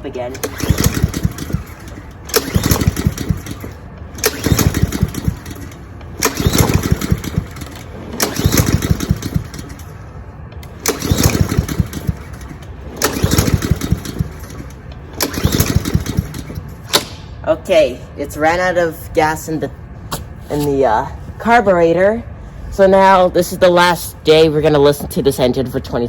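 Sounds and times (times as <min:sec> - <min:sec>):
lawn mower engine cranking: 0:00.0 - 0:17.2.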